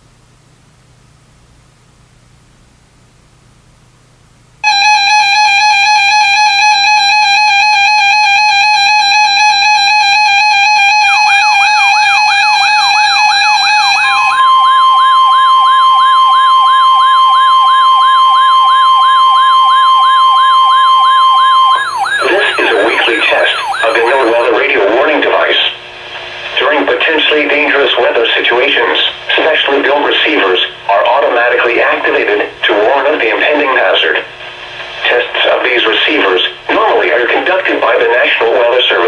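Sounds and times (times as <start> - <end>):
steady electronic alarm tone: 4.6 - 24.8
steady high alarm tone: 4.6 - 25.0
person speaking: 22.2 - 24.9.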